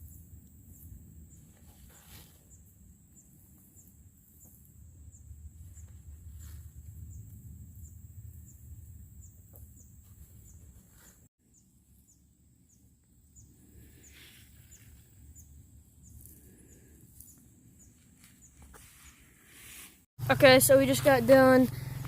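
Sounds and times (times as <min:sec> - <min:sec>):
short insect chirp: 0:00.0 - 0:19.2.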